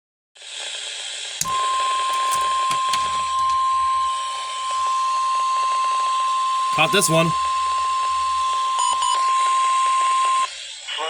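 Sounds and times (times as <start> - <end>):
brief clicks: 1.4 - 3.7.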